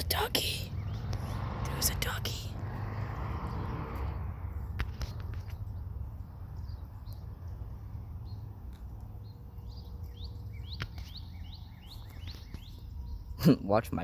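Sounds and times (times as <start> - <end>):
small bird chirping: 0.0 - 2.3, 4.6 - 13.4.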